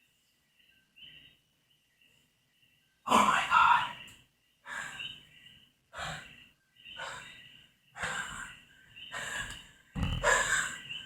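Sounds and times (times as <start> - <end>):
person breathing hard: 8.0 - 11.0.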